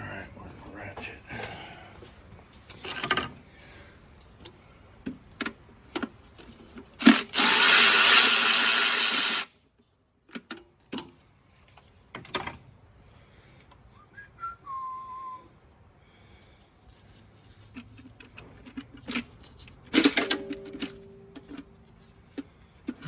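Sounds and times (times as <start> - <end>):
power ratchet running: 7.0 - 9.5
thin whistle-like tone: 14.0 - 15.5.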